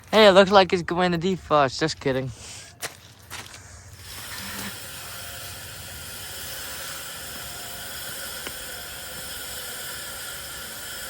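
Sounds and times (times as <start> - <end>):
hose spraying water: 4.0 - 11.0.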